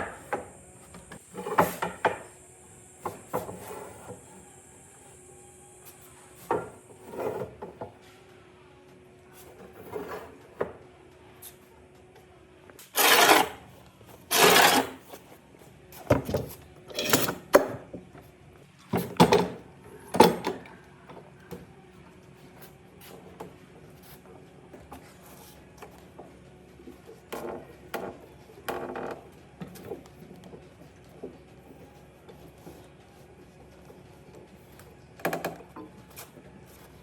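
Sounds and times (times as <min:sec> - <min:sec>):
scraping strokes on wood: 0:00.0 - 0:02.3, 0:12.8 - 0:13.6, 0:14.2 - 0:15.2.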